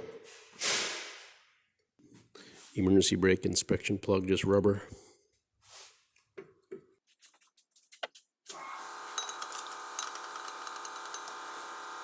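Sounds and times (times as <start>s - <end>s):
handheld power tool whining: 8.5s - 12.0s.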